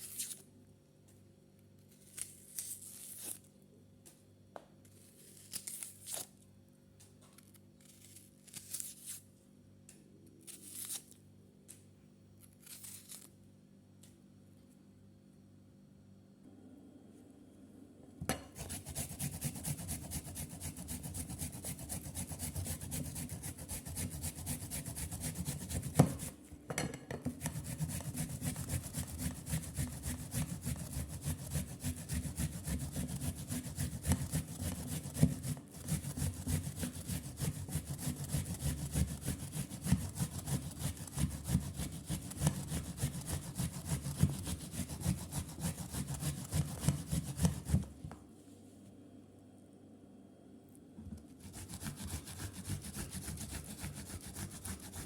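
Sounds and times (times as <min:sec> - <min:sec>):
rapid rasping scrape by hand: 0:18.6 - 0:26.4, 0:27.4 - 0:47.8, 0:51.4 - 0:55.0.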